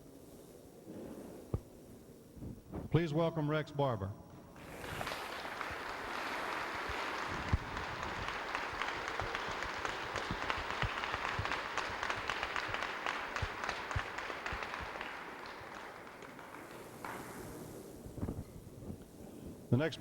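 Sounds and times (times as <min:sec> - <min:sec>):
audience applauding: 0:04.6 - 0:17.6.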